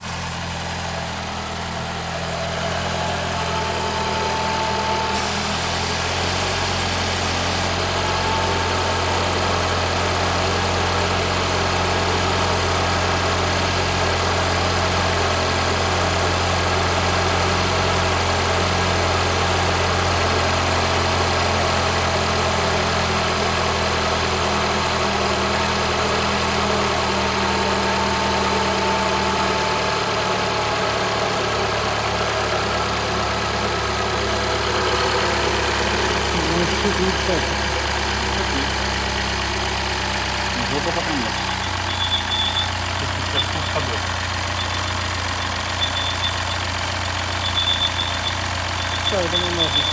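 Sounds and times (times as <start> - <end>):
car engine idling: 0.0 - 49.9
thin high whistle: 41.2 - 49.9.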